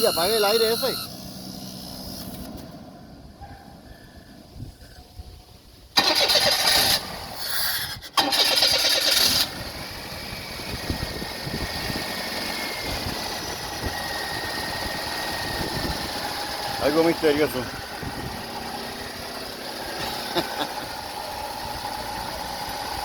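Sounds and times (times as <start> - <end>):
car starter cranking: 5.9 - 9.7
car engine idling: 8.1 - 23.0.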